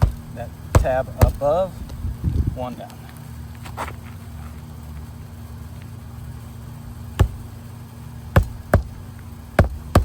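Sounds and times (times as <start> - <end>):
hammer striking roofing nail: 0.0 - 1.5, 7.2 - 7.4, 8.3 - 9.0, 9.6 - 10.0.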